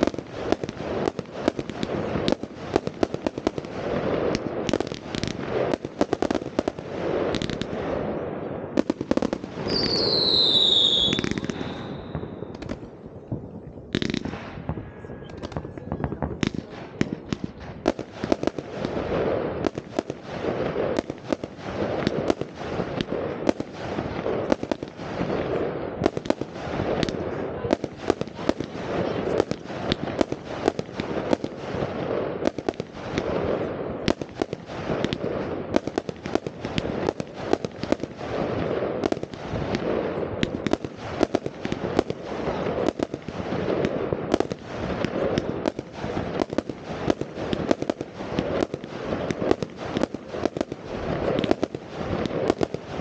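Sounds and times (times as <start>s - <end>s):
firecrackers crackling: 0.0s - 53.0s
fireworks bangs: 0.0s - 53.0s
falling firework whistle: 9.6s - 12.6s.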